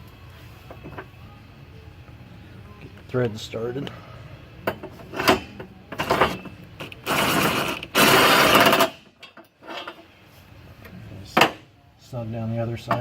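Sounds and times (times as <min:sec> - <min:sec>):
electric impact wrench: 0:07.0 - 0:09.0.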